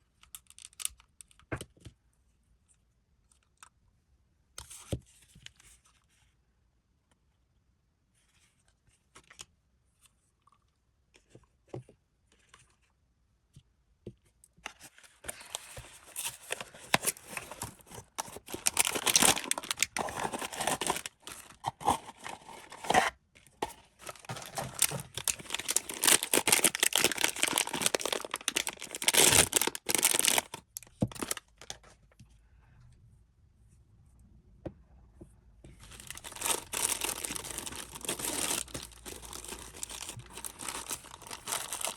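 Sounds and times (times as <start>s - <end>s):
packaging tearing and crinkling: 15.4s - 31.8s, 35.8s - 41.9s.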